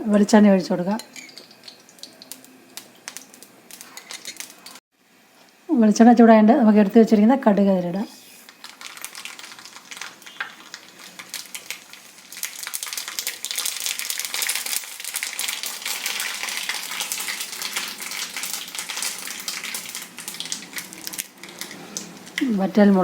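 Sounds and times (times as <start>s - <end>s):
seeds popping in hot oil: 1.1s - 4.8s, 8.5s - 22.6s.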